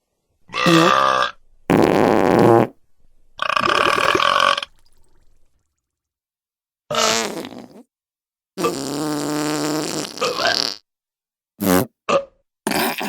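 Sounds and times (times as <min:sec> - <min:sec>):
fart sound effects: 0:00.5 - 0:02.8, 0:03.4 - 0:05.2, 0:06.9 - 0:07.9, 0:08.6 - 0:10.8, 0:11.6 - 0:13.0.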